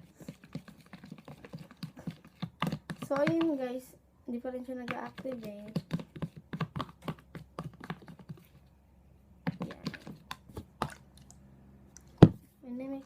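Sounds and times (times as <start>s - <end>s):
spoon stirring slime in bowl: 0.0s - 3.8s, 4.5s - 8.7s, 9.4s - 11.4s.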